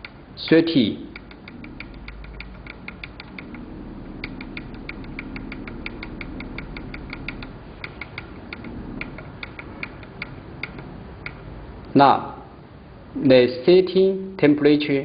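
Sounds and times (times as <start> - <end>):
low steady hum: 0.0 - 15.0
rapid key clicking: 1.1 - 11.5.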